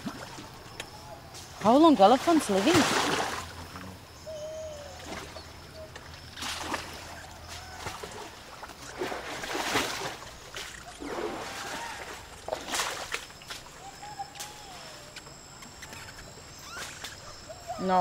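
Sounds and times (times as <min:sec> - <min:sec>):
elephant feet splashing through mud: 0:01.4 - 0:03.6, 0:05.0 - 0:15.1.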